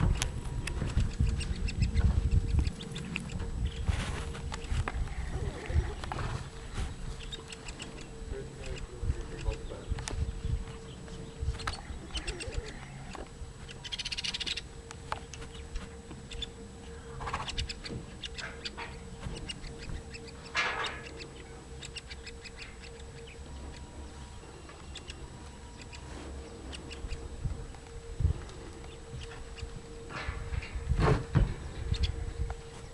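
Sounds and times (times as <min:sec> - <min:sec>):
low rumble: 0:00.0 - 0:32.9
steady low hum: 0:00.0 - 0:32.9
baby woodpecker buzzy calls: 0:00.9 - 0:03.9, 0:04.6 - 0:16.6, 0:17.2 - 0:27.8.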